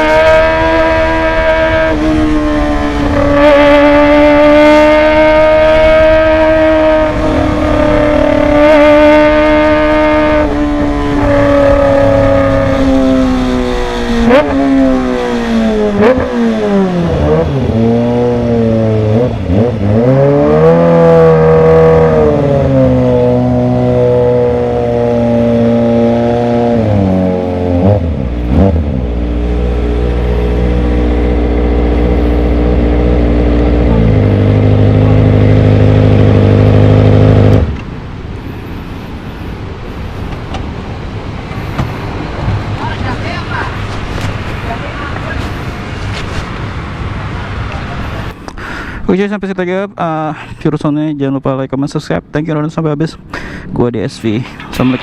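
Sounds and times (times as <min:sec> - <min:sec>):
motorcycle engine revving high: 0:00.0 - 0:37.8.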